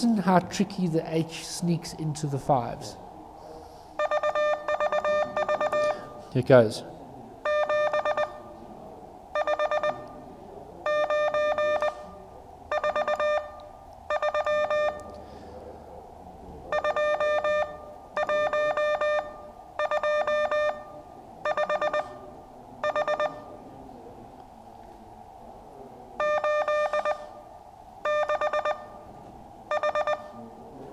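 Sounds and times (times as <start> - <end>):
morse code beeps: 4.0 - 6.3, 7.4 - 8.6, 9.4 - 10.2, 10.8 - 15.2, 16.7 - 23.6, 26.2 - 29.1, 29.7 - 30.4.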